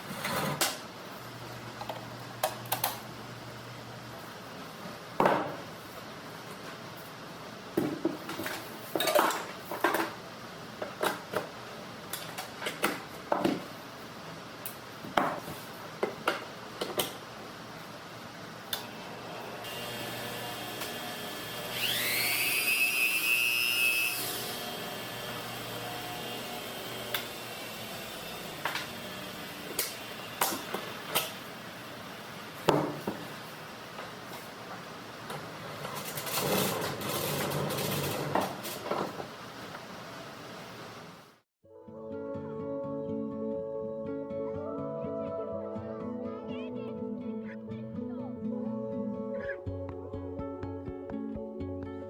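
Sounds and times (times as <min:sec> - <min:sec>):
small electric motor whining: 0:19.1 - 0:30.4.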